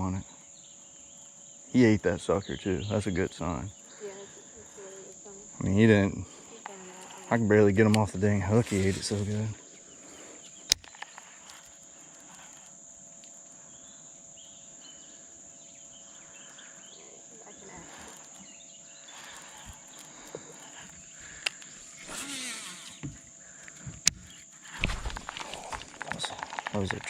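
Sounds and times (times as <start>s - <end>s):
insects buzzing: 0.0s - 27.0s
rustle: 3.7s - 13.6s, 15.9s - 27.0s.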